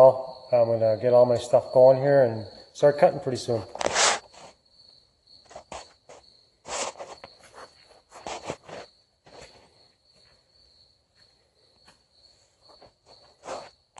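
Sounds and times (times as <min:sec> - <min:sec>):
rustles and knocks of handling gear: 0:06.8 - 0:10.4.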